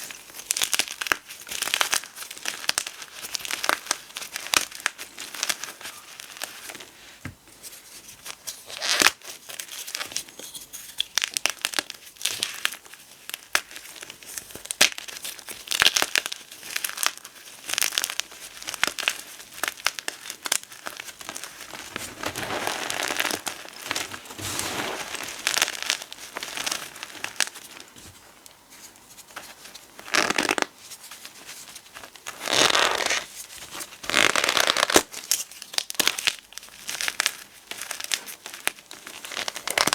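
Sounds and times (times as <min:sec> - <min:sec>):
chalk being crushed and crumbled: 0:15.0 - 0:27.9.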